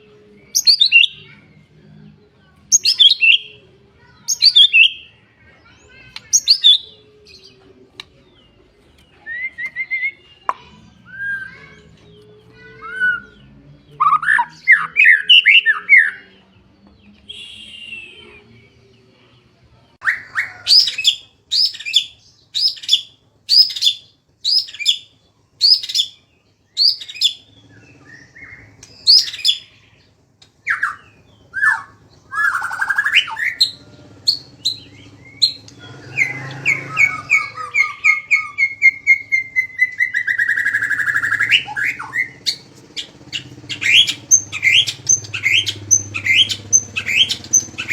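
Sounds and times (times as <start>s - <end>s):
songbird singing: 0.0s - 47.9s.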